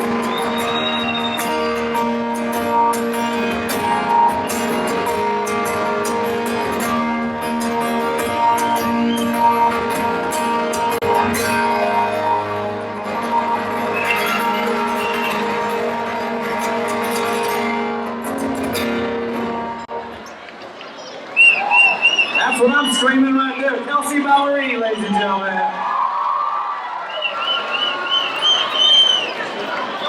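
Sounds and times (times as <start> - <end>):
guitar-led pop-rock music: 0.0 - 20.1.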